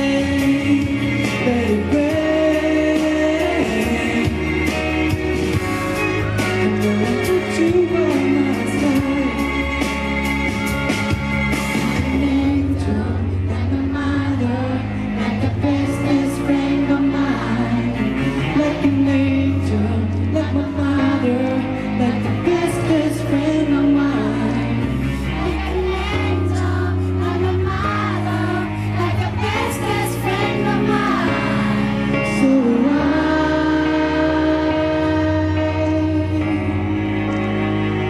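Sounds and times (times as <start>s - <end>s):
person singing: 0.0s - 4.9s, 5.6s - 10.3s, 11.6s - 37.7s
pop ballad over loudspeakers: 0.0s - 38.0s.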